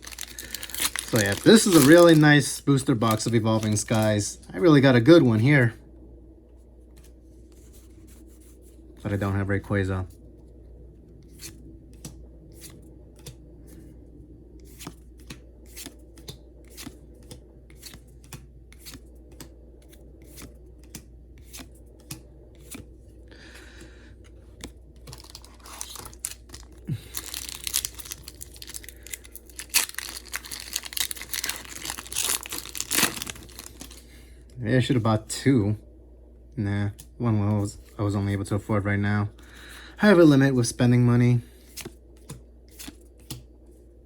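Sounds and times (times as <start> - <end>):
foil wrapper crinkling and tearing: 0.0 - 4.2, 25.0 - 34.1
trading cards clicking: 20.2 - 22.9.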